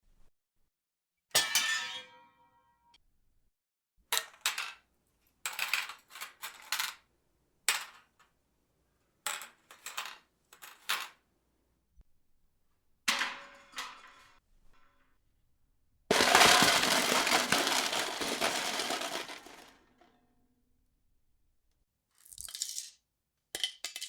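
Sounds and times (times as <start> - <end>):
metal objects clattering on hard surface: 13.1 - 14.4, 16.1 - 19.8.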